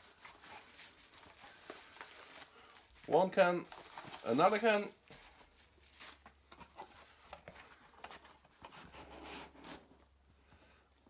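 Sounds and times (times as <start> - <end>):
package rustling: 0.0 - 8.7.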